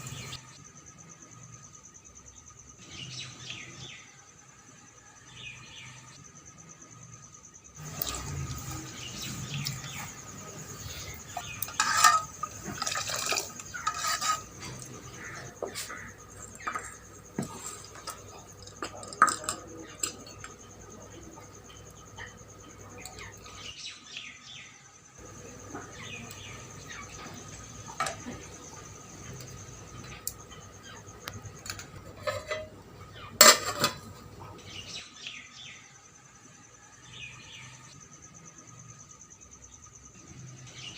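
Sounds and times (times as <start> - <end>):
high insect-like drone: 0.0 - 23.7.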